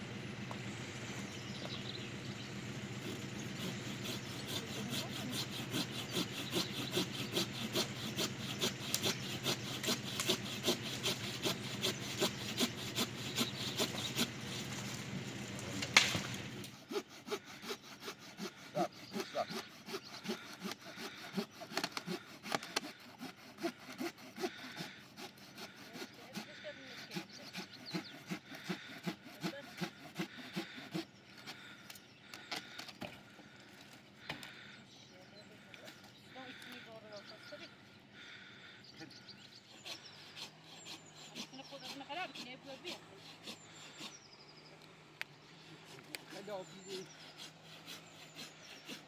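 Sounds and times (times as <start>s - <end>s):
hand saw cutting wood: 0.0s - 31.8s, 39.7s - 44.3s, 45.7s - 49.0s
sharp wood crack: 7.8s - 16.8s, 21.6s - 23.0s.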